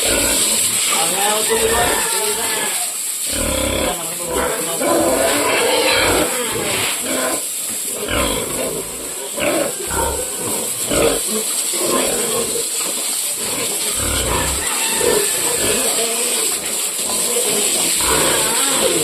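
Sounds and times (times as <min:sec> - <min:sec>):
pigs grunting: 0:00.0 - 0:19.0
steady high hiss: 0:00.0 - 0:19.0.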